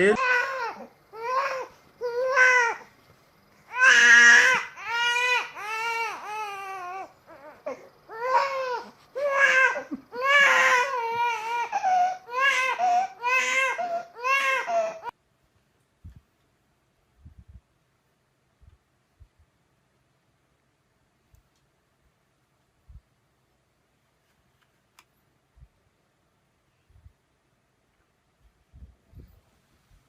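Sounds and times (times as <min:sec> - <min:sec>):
baby crying: 0:00.0 - 0:02.9, 0:03.7 - 0:15.1.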